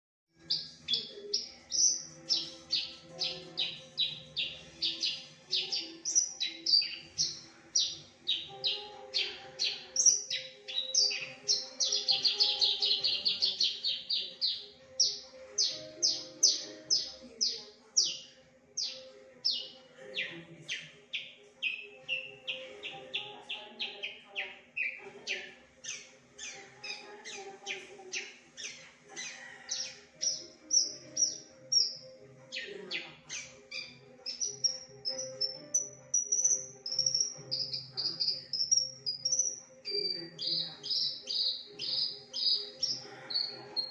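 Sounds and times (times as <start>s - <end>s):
bush lark singing: 0.4s - 19.8s, 28.6s - 32.7s, 33.3s - 43.9s.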